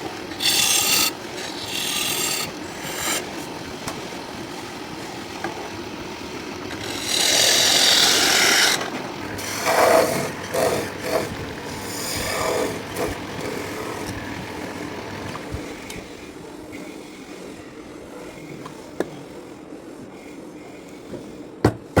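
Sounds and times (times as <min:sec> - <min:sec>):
abrasive scraping on wood: 0:00.3 - 0:03.5, 0:06.7 - 0:15.8.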